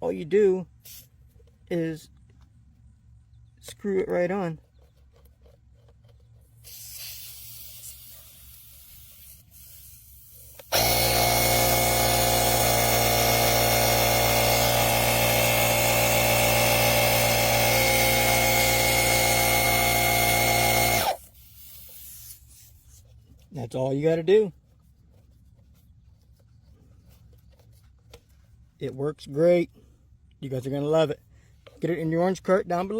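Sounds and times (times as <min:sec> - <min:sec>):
faint handling noise: 0:00.7 - 0:06.6, 0:21.2 - 0:32.6
electric air pump buzzing: 0:06.6 - 0:22.4.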